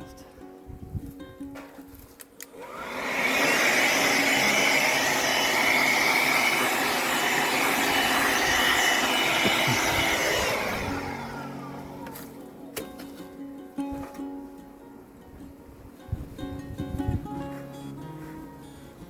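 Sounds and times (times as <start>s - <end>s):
air blower running: 2.5s - 12.4s.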